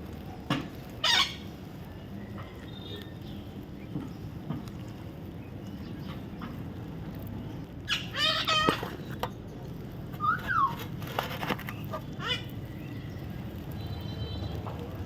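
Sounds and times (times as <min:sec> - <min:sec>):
baby parrot calling: 0:01.0 - 0:01.5, 0:07.9 - 0:09.1, 0:10.2 - 0:10.9, 0:11.9 - 0:12.6.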